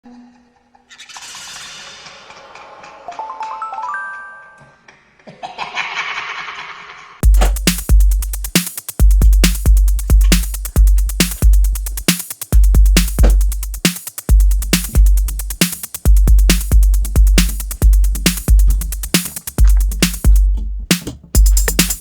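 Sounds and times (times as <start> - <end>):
booming bass notes: 7.2 - 12.0, 12.6 - 22.0
electronic music with drum machine: 7.2 - 22.0.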